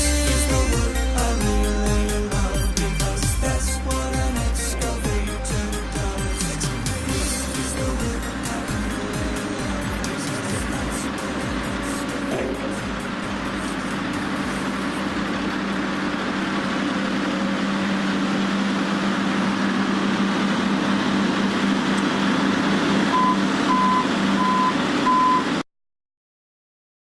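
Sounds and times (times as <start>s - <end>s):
construction machine engine running: 0.0s - 25.6s
reversing alarm beeping: 23.1s - 25.6s.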